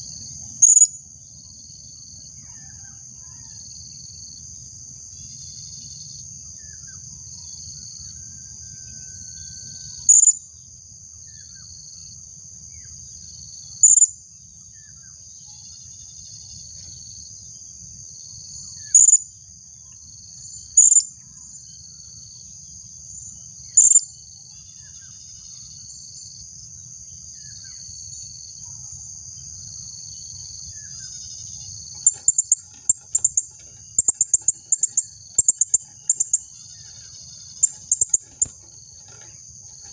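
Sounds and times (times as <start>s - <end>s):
insects droning: 0.0s - 39.9s.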